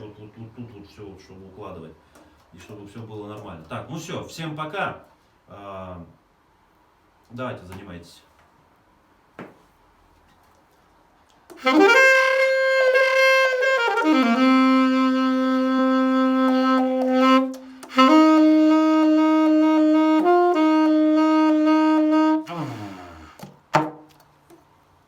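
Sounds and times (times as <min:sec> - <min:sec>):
saxophone playing long notes: 0:11.6 - 0:23.4.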